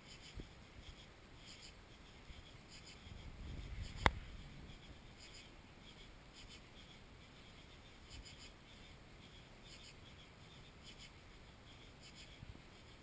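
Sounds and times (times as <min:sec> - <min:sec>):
faint scratchy ticks: 0:03.6 - 0:07.0.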